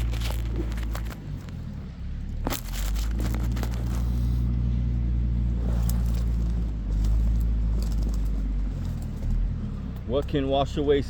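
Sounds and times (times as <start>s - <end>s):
knocks and clatters: 0.0s - 4.2s
engine idling: 0.0s - 11.0s.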